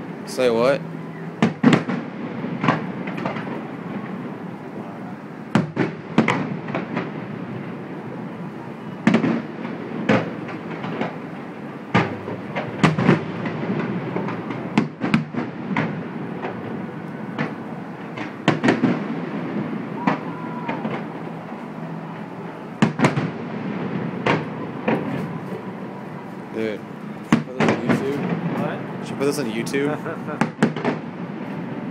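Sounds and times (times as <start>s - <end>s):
continuous low rumble: 0.0s - 31.9s
fireworks bangs: 0.3s - 31.9s.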